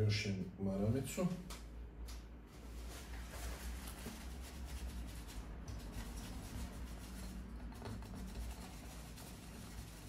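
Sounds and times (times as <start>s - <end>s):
steady low hum: 0.0s - 10.0s
tissue scrubbing metal: 2.6s - 7.6s, 8.2s - 10.0s.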